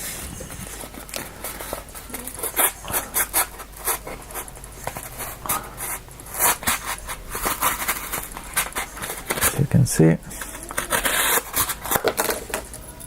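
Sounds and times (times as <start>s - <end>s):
knife sawing through cardboard: 10.8s - 11.9s.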